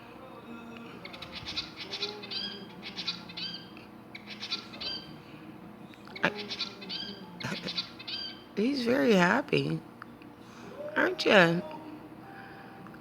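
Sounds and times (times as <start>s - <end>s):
bird chirping and whistling: 1.0s - 5.1s, 6.2s - 8.5s.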